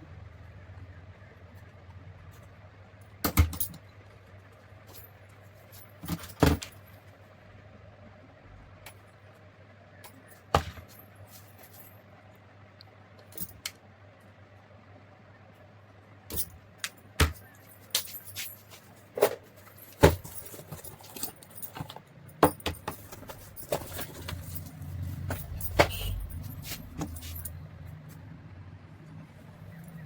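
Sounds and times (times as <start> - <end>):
metal tools clinking: 17.3 - 27.6.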